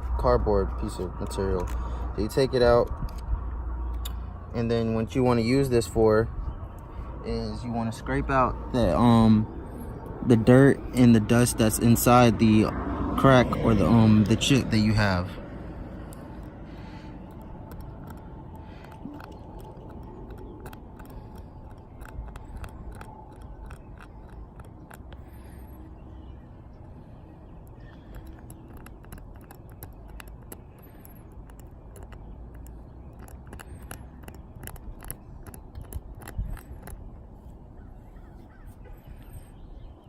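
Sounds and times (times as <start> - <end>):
low steady rumble: 0.0 - 39.9.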